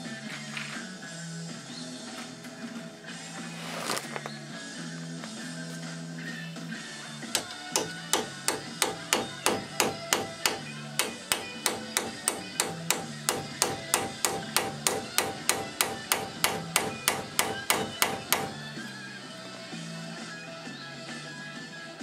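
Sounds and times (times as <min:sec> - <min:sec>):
faint background music: 0:00.0 - 0:22.0
hammer striking metal: 0:07.4 - 0:18.7.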